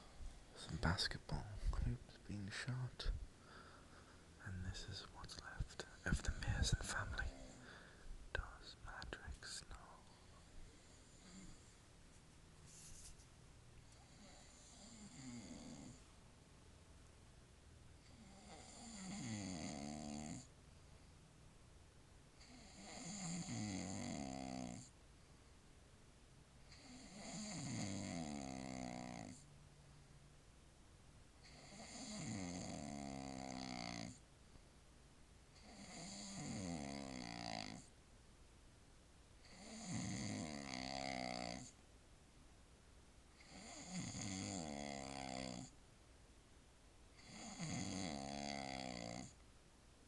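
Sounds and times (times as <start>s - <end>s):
man snoring: 14.0s - 16.0s, 18.1s - 20.5s, 22.4s - 24.9s, 26.7s - 29.4s, 31.4s - 34.2s, 35.6s - 37.9s, 39.4s - 41.8s, 43.4s - 45.7s, 47.2s - 49.4s.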